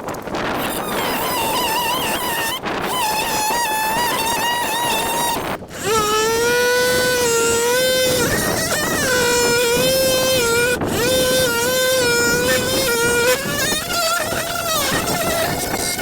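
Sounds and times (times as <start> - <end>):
electric drill motor whining: 0.4 - 16.0.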